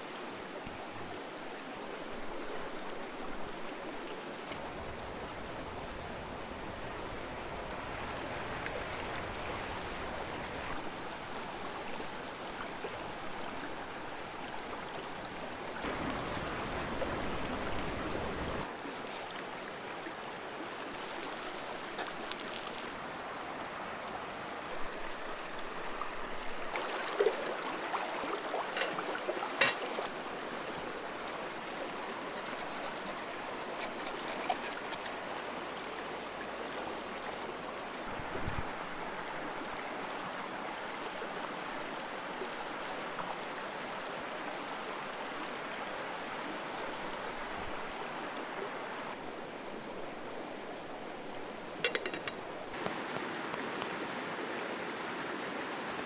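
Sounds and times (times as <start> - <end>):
flowing water rushing: 0.0 - 56.0
sharp clicks and knocks: 51.9 - 52.4.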